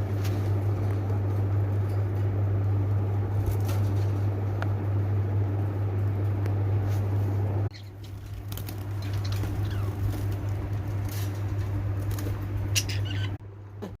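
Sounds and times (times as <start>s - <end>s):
steady low hum: 0.0s - 14.0s
lovebirds chirping and squeaking: 7.7s - 10.4s, 12.6s - 13.4s.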